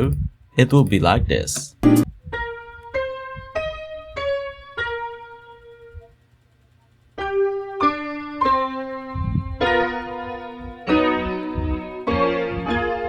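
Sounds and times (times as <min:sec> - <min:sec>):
solo piano: 0:07.2 - 0:13.0.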